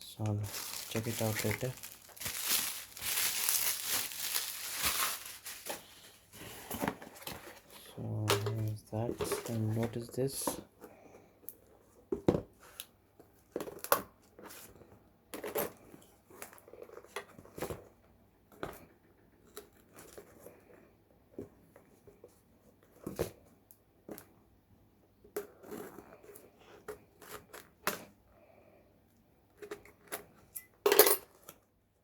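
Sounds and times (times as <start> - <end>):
wrapping crinkling and tearing: 0.2 - 6.1.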